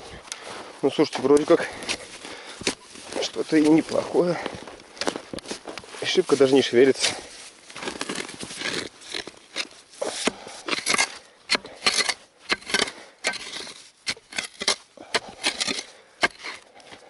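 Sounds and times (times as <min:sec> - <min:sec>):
snow and frozen earth crunching: 0:00.0 - 0:17.0.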